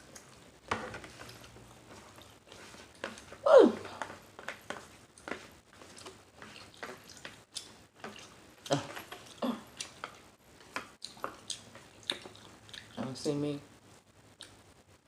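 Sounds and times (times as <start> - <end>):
mouth smacking and chewing: 5.9 - 10.2, 10.8 - 13.0.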